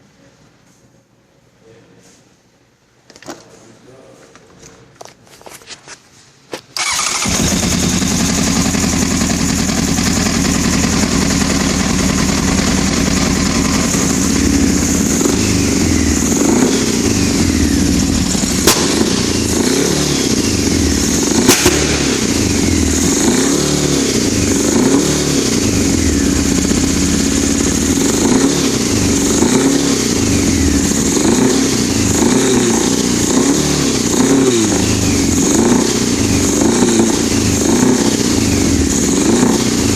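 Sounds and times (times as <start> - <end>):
motorcycle engine revving: 6.8 - 39.9.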